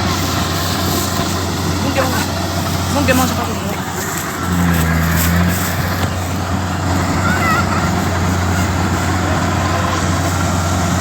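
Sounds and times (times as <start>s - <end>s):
harvester engine droning: 0.0s - 11.0s.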